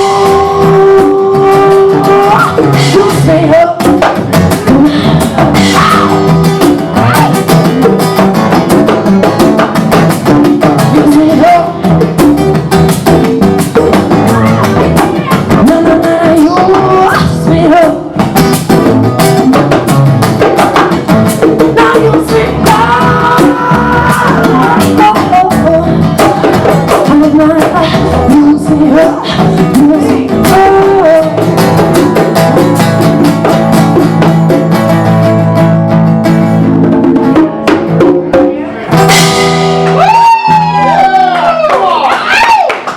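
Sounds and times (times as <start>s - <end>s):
person singing: 0.0s - 8.9s, 10.4s - 20.0s, 21.3s - 32.8s
bongos: 0.0s - 42.9s.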